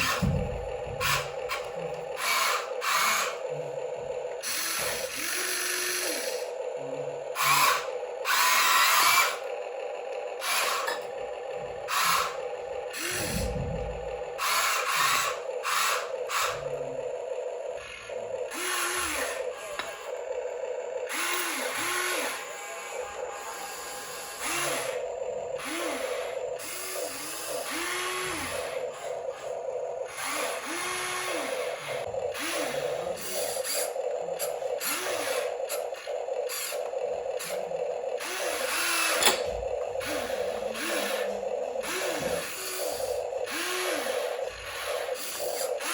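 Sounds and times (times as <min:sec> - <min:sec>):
small electric motors whining: 0:00.0 - 0:45.9
steady buzzing hum: 0:00.0 - 0:45.9.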